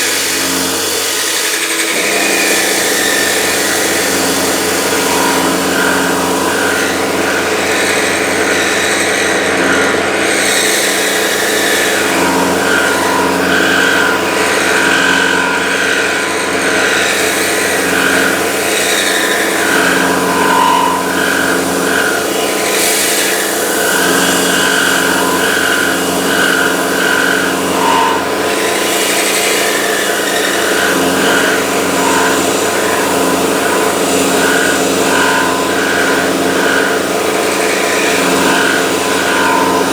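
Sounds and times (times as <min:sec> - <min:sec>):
end mill cutting whine: 0:00.0 - 0:39.9
milling machine motor hum: 0:00.0 - 0:39.9.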